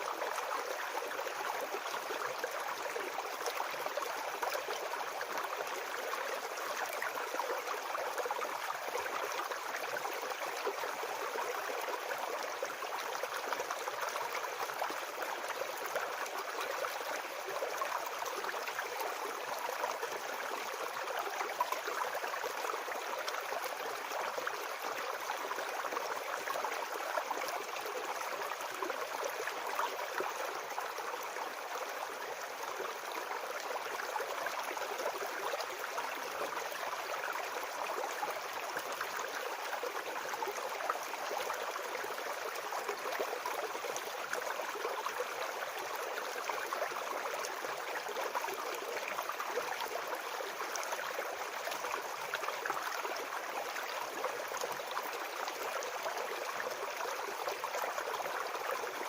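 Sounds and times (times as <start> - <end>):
brook babbling over stones: 0.0 - 59.0.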